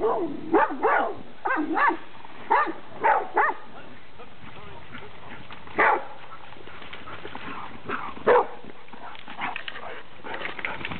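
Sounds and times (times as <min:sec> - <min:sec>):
dog barking: 0:00.0 - 0:03.7, 0:05.8 - 0:06.2, 0:07.9 - 0:09.5.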